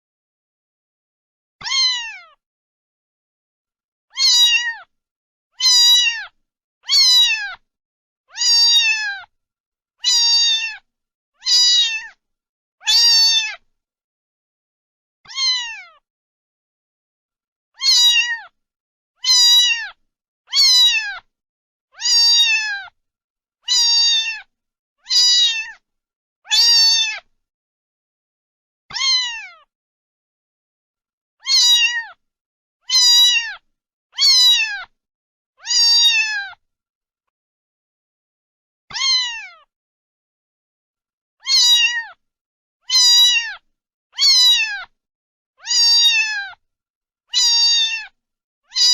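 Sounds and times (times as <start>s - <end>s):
cat meowing: 1.6s - 2.4s, 4.1s - 4.9s, 5.6s - 7.6s, 8.3s - 9.3s, 10.0s - 12.2s, 12.8s - 13.6s, 15.3s - 16.0s, 17.8s - 18.6s, 19.2s - 21.3s, 22.0s - 23.0s, 23.6s - 25.8s, 26.5s - 27.3s, 28.9s - 29.7s, 31.4s - 32.2s, 32.8s - 35.0s, 35.6s - 36.6s, 38.9s - 39.7s, 41.4s - 42.2s, 42.8s - 43.6s, 44.2s - 44.9s, 45.6s - 46.6s, 47.3s - 48.9s.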